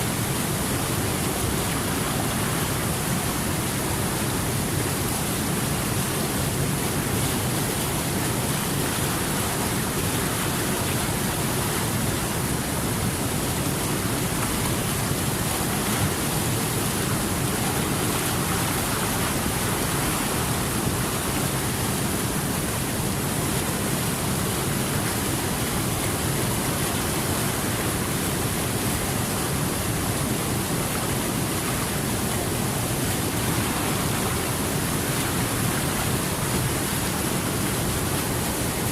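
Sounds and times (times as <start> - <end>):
rushing water: 0.0 - 38.9.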